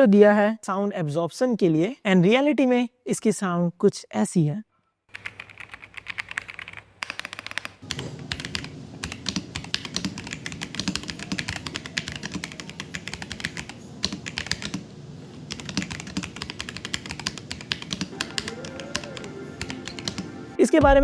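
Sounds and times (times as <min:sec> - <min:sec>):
mechanical keyboard typing: 0:05.1 - 0:14.8, 0:15.5 - 0:20.3.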